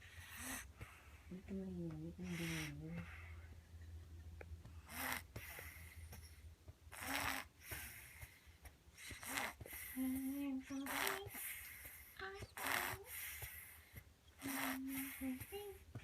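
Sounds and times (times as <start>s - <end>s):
person snoring: 6.9s - 8.2s, 9.0s - 13.7s, 14.4s - 15.6s.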